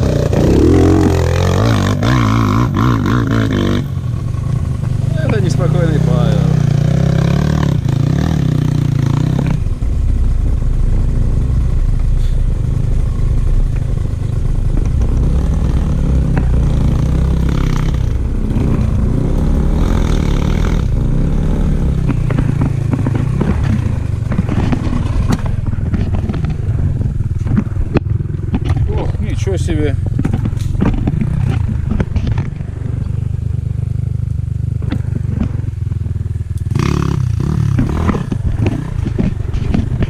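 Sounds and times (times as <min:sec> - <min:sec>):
motorcycle engine running: 0:00.0 - 0:40.0
bike clattering over ground: 0:30.0 - 0:32.8.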